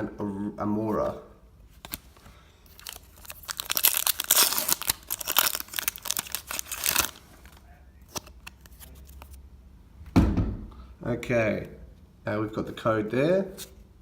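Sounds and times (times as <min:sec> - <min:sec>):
foil wrapper crinkling and tearing: 0:02.7 - 0:09.4.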